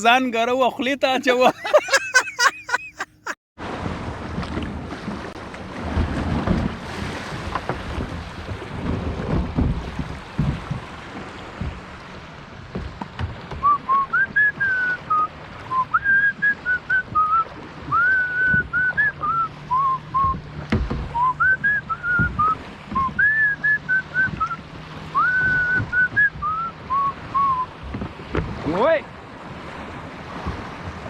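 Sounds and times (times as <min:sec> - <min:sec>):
water noise: 0:00.0 - 0:31.0
wind: 0:00.0 - 0:31.0
person whistling a tune: 0:13.6 - 0:20.4, 0:21.2 - 0:24.6, 0:25.2 - 0:27.7.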